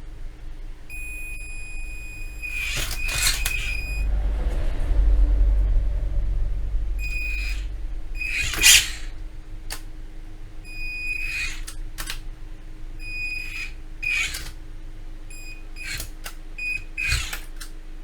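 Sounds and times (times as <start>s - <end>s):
faint steady hum: 0.0s - 18.0s
clicks: 0.9s - 4.5s
whooshing swishes: 1.9s - 10.6s.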